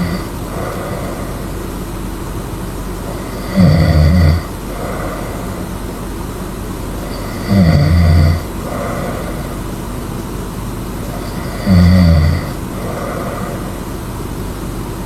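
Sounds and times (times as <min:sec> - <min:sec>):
person snoring loudly: 0:00.0 - 0:01.6, 0:03.0 - 0:05.8, 0:07.0 - 0:09.8, 0:11.0 - 0:14.0
steady background hiss: 0:00.0 - 0:15.0.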